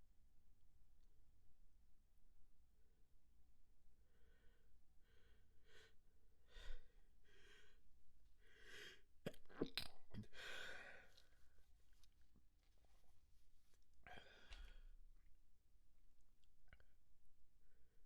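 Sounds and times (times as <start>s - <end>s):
breathy in-breaths: 8.4s - 9.0s, 10.2s - 11.4s, 14.1s - 14.9s.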